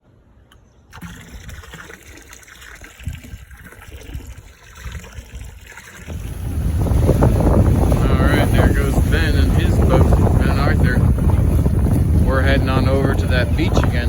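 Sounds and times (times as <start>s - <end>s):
water trickling and lapping: 0.8s - 14.0s
low splashes: 0.9s - 14.0s
low rumble: 6.2s - 14.0s.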